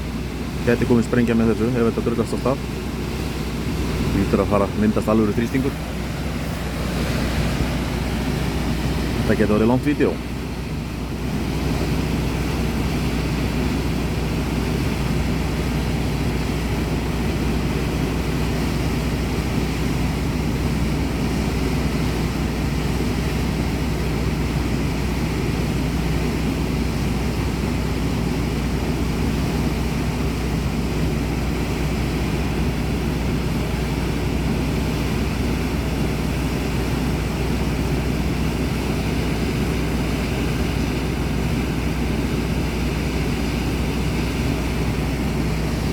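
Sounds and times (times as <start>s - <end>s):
river water rushing: 0.4s - 13.7s.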